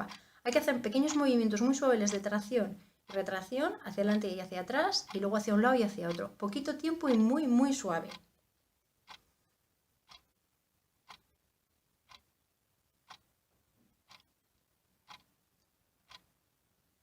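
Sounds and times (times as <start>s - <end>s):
clock ticking: 0.0s - 8.4s, 9.0s - 9.3s, 10.0s - 10.4s, 11.0s - 14.4s, 15.0s - 15.4s, 16.0s - 16.5s.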